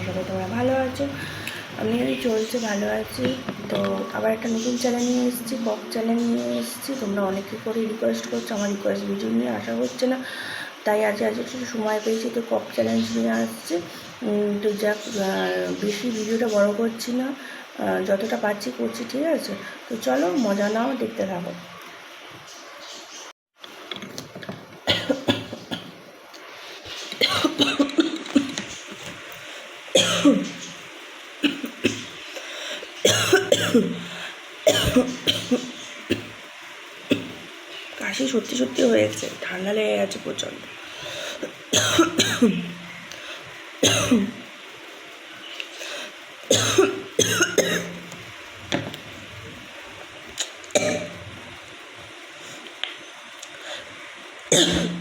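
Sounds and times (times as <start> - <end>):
woman coughing: 24.9 - 25.9, 27.2 - 28.6, 30.0 - 30.5, 31.4 - 32.1, 33.1 - 34.0, 34.7 - 36.3, 41.7 - 42.6, 43.8 - 44.3, 46.5 - 48.0, 50.8 - 51.2, 54.5 - 55.0
woman clearing her throat: 46.5 - 48.0, 54.5 - 55.0.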